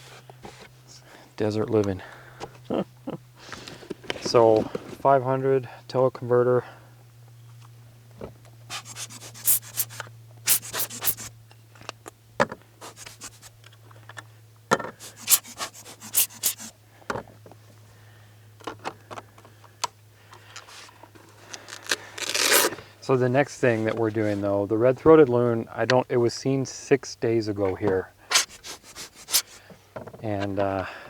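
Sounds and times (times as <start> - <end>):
handling noise rubbing and clicking: 8.7 - 11.3, 12.8 - 13.5, 15.0 - 16.7, 28.3 - 29.6.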